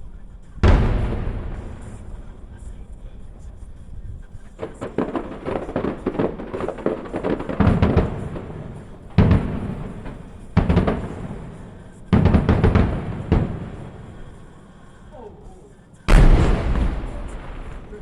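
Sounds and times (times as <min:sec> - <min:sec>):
fireworks heavy booms: 0:00.6 - 0:18.0
fireworks crackling pops: 0:04.2 - 0:18.0.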